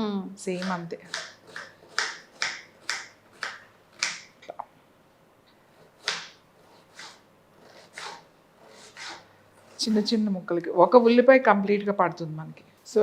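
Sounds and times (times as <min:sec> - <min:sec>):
knife chopping on cutting board: 0:00.5 - 0:04.3, 0:05.8 - 0:08.2.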